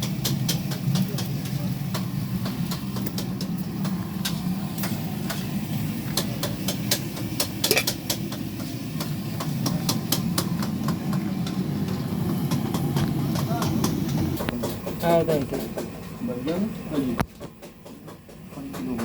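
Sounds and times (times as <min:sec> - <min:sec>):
low engine-like hum: 0:00.0 - 0:19.0
sharp clicks and knocks: 0:06.1 - 0:16.6.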